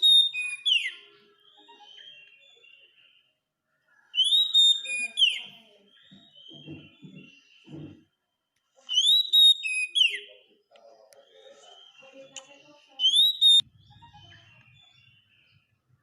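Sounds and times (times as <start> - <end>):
bird whistling song: 0.0 - 3.2, 4.1 - 7.8, 8.9 - 10.4, 13.0 - 14.0.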